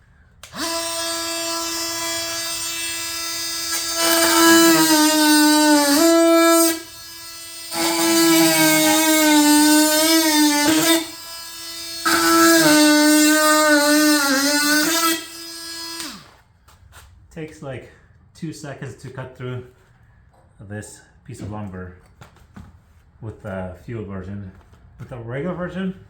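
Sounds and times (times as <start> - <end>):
oscillating multi-tool cutting wood: 0.4 - 16.4.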